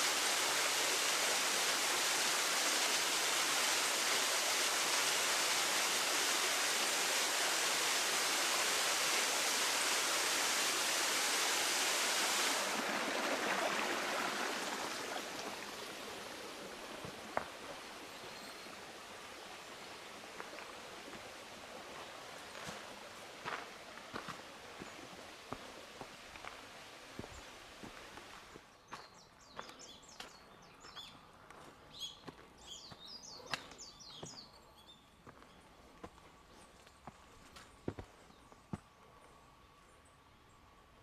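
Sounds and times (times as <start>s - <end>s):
rushing water: 0.0s - 28.6s
footsteps on trail: 21.9s - 34.5s, 35.2s - 39.0s.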